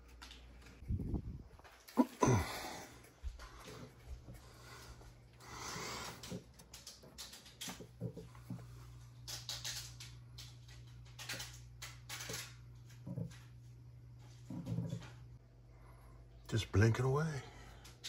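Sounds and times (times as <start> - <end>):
small clicks: 6.0 - 13.5.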